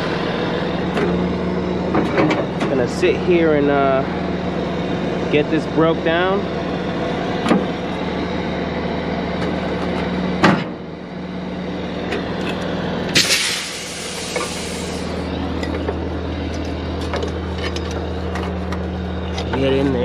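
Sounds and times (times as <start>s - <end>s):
diesel truck engine idling: 0.0s - 19.8s
hiss of released air: 13.2s - 15.2s.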